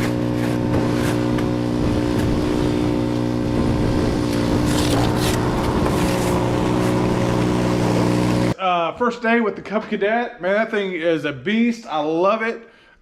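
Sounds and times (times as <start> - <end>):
snow blower engine running: 0.0 - 8.6.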